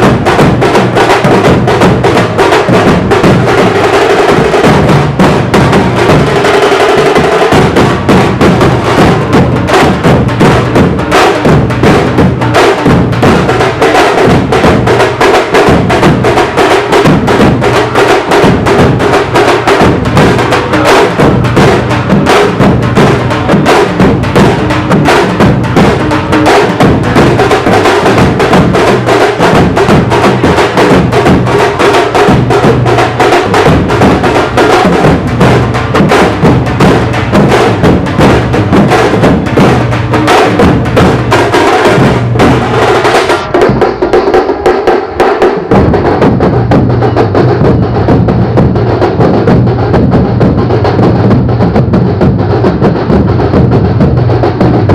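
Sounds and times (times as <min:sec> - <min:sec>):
frame drums beaten with sticks: 0:00.0 - 0:54.9.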